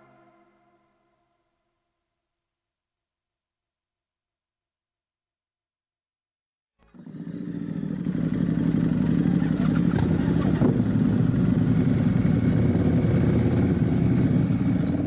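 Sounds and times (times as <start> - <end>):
vehicle engine running: 7.0 - 15.0.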